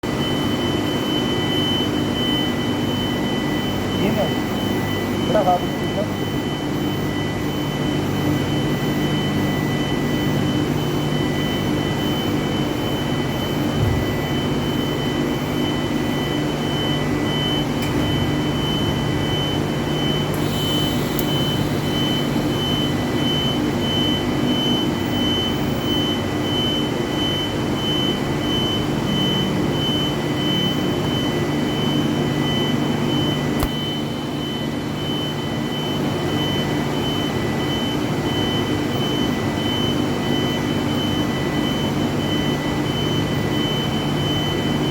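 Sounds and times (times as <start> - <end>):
welding arc hissing buzz: 20.3 - 23.2
sharp click: 33.6 - 33.8.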